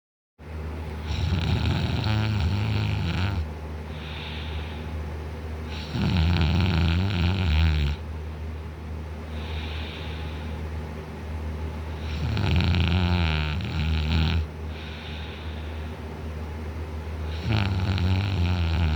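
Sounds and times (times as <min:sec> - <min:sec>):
man snoring: 0:01.0 - 0:04.7, 0:05.7 - 0:08.0, 0:12.0 - 0:15.4, 0:17.3 - 0:18.9
soft breathing: 0:03.8 - 0:06.0, 0:08.5 - 0:10.8, 0:14.6 - 0:16.1.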